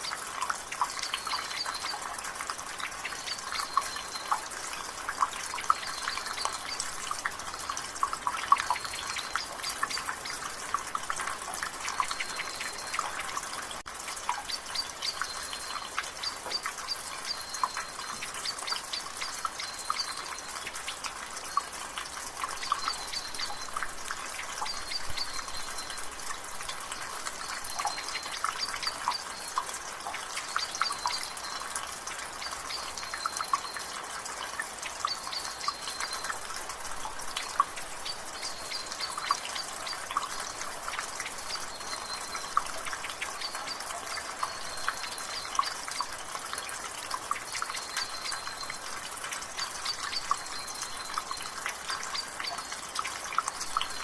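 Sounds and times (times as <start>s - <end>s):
rain hiss: 0.0s - 54.0s
water dripping from gutter: 0.0s - 54.0s
bird chirping: 14.3s - 21.7s, 37.4s - 46.2s.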